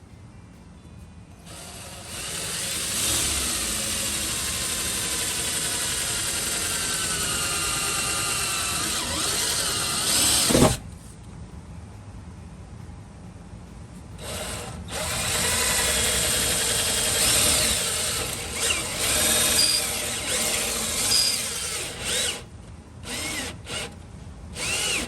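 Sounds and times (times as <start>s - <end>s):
electric drill whining: 1.5s - 10.8s, 14.2s - 24.0s, 24.6s - 25.0s.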